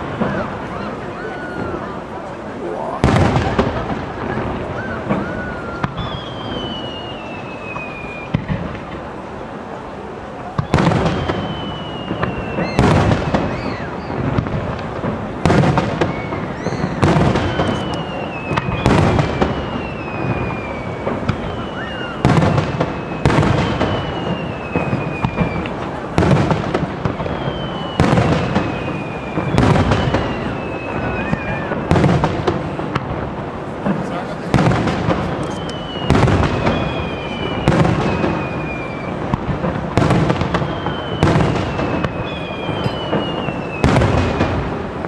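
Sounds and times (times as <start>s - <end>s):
falling firework whistle: 0.0s - 9.3s, 10.3s - 45.0s
firework shells bursting: 10.7s - 45.0s.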